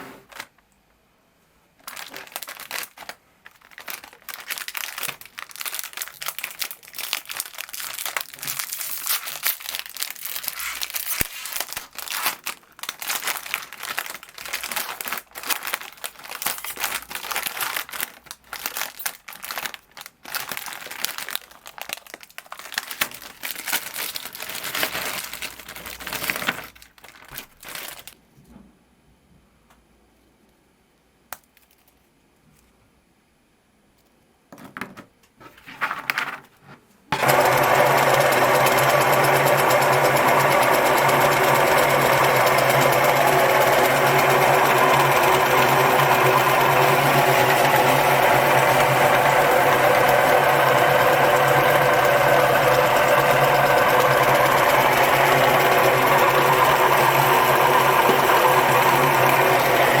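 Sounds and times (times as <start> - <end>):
rustling handling noises: 1.8 - 28.6, 31.3 - 32.9, 33.9 - 37.1
meat grinder motor humming: 37.2 - 60.0.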